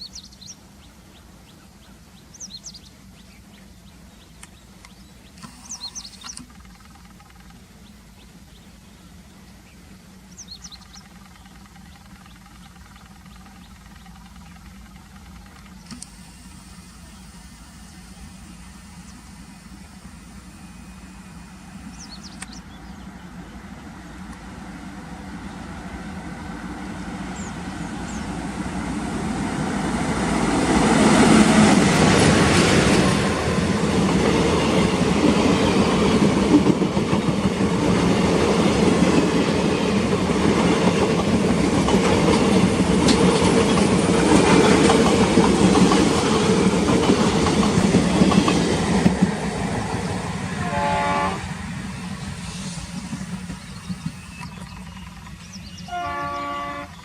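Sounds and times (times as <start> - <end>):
diesel locomotive engine rumble: 0.0 - 57.0
train wheels clattering on rail joints: 10.3 - 16.0, 30.7 - 56.0.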